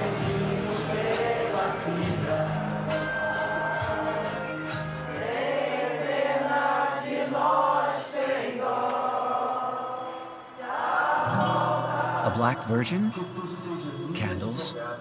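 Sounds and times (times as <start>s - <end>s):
group of voices chanting: 5.1s - 13.4s.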